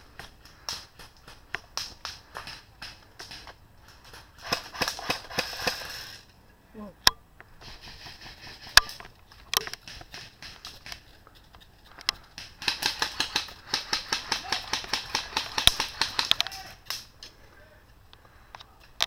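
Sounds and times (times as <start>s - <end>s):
rapid clicking and rustling: 7.6s - 17.4s.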